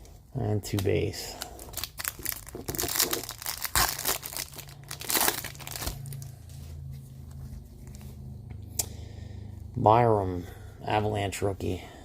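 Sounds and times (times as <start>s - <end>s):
foil wrapper crinkling and tearing: 0.7s - 6.3s
steady low hum: 2.7s - 12.0s.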